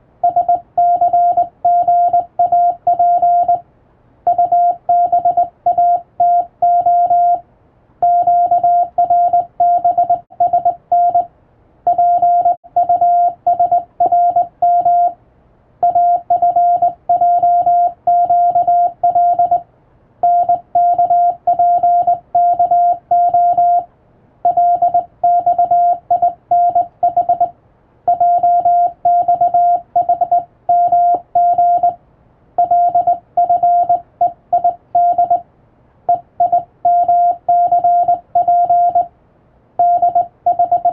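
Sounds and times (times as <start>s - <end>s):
morse code beeping: 0.2s - 3.6s, 4.3s - 7.4s, 8.0s - 11.3s, 11.9s - 15.2s, 15.8s - 19.6s, 20.2s - 27.5s, 28.1s - 32.0s, 32.6s - 35.4s, 36.1s - 39.1s, 39.8s - 40.9s.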